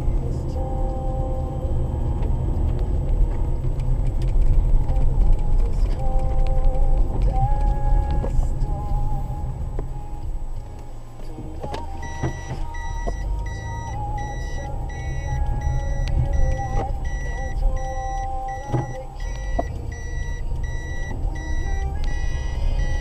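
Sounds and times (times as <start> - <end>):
engine and road rumble: 0.0 - 23.0
reverse warning beeping: 9.8 - 23.0.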